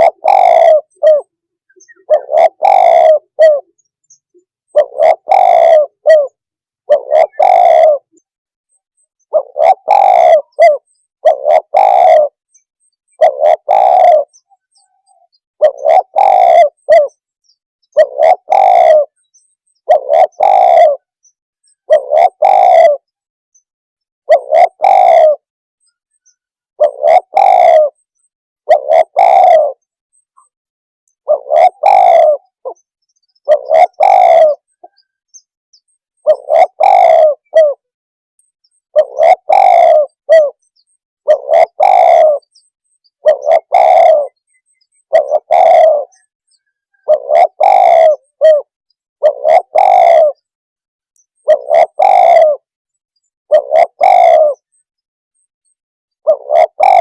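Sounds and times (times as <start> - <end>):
dove cooing: 0.0 - 8.3, 9.2 - 17.2, 17.9 - 23.3, 24.2 - 25.5, 26.8 - 28.1, 28.7 - 30.0, 31.2 - 35.1, 36.1 - 38.0, 38.8 - 50.5, 51.4 - 52.7, 53.5 - 54.8, 55.7 - 57.0.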